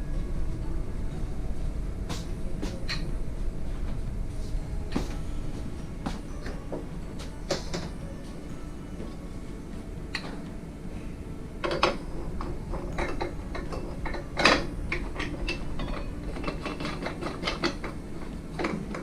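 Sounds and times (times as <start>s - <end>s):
metal parts clicking and clanking: 7.5s - 8.0s, 11.6s - 19.0s.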